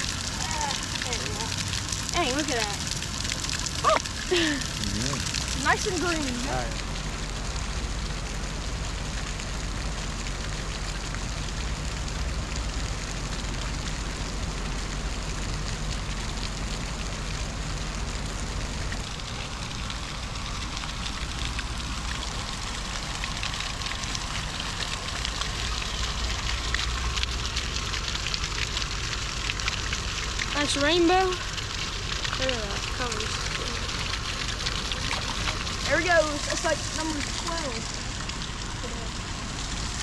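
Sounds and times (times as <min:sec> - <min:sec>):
water hissing: 0:00.0 - 0:06.8, 0:19.1 - 0:40.0
low rumble: 0:31.4 - 0:40.0.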